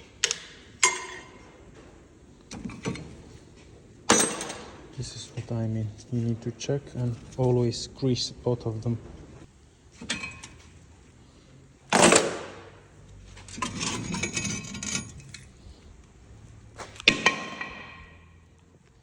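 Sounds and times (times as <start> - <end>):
metal pieces rattling and clinking: 13.5 - 15.5.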